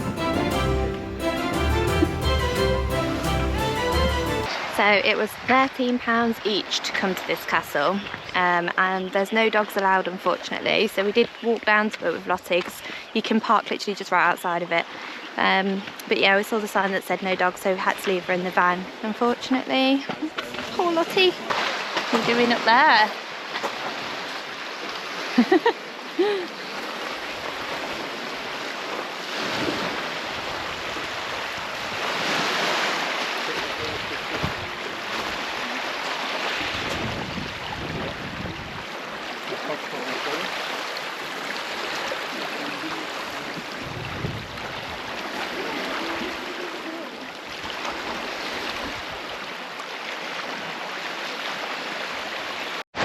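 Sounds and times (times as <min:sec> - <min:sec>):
wind blowing over microphone: 0:29.6 - 0:32.6, 0:33.7 - 0:35.4, 0:36.6 - 0:39.0, 0:43.1 - 0:46.4.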